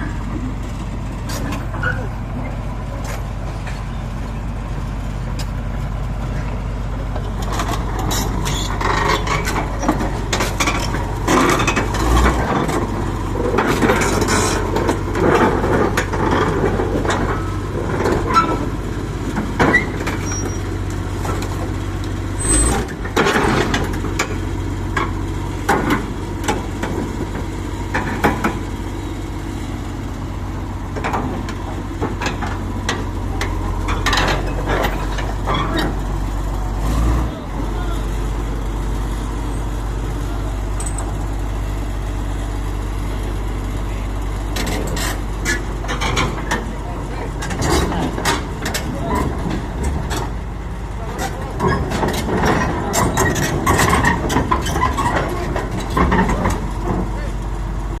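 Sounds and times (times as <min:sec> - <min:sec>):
bulldozer diesel engine running: 0:00.0 - 0:58.0
metal clanks and scraping: 0:01.2 - 0:03.9, 0:07.1 - 0:28.6, 0:30.9 - 0:37.4, 0:38.7 - 0:41.4, 0:44.5 - 0:50.4, 0:51.0 - 0:57.3.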